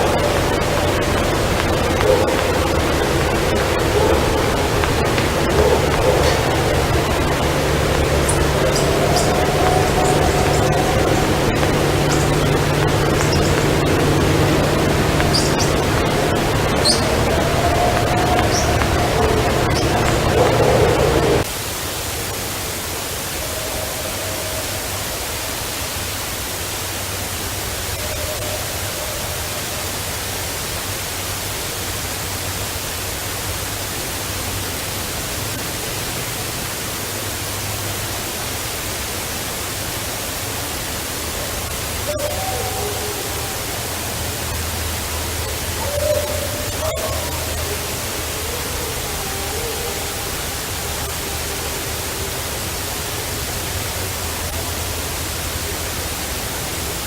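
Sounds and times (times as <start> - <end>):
distant wavering vocal calls: 0.0 - 21.5, 41.4 - 57.0
field recording hiss: 0.0 - 57.0.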